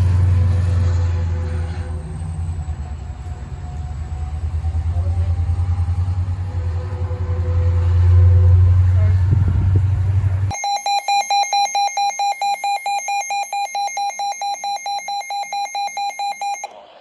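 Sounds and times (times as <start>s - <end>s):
train rumble: 0.0s - 10.5s
phone alert pulsing beeps: 10.5s - 16.7s.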